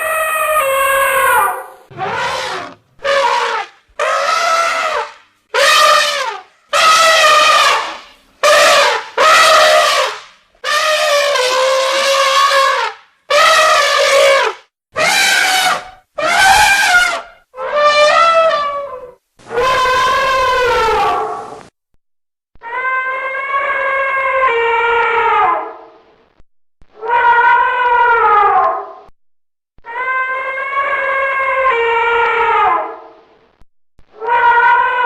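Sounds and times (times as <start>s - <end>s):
elephants trumpeting: 0.0s - 21.6s.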